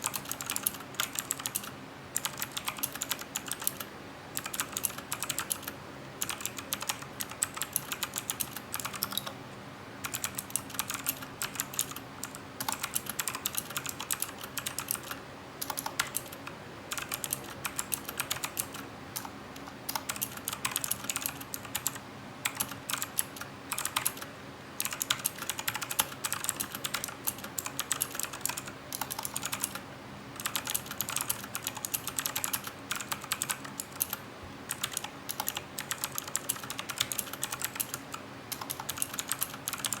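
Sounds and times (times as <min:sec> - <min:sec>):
mechanical keyboard typing: 0:00.0 - 0:09.4, 0:10.0 - 0:29.8, 0:30.4 - 0:40.0.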